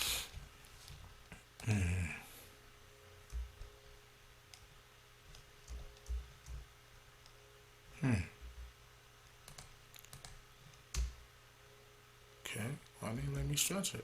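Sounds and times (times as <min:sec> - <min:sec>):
computer mouse clicks: 0:09.2 - 0:11.2.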